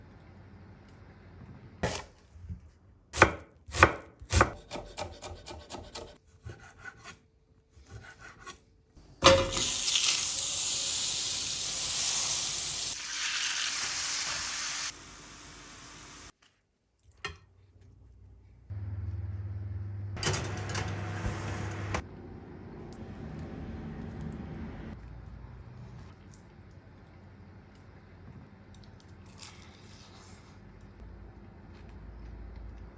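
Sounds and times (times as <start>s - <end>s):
knife chopping on cutting board: 1.8s - 2.1s, 3.2s - 7.2s.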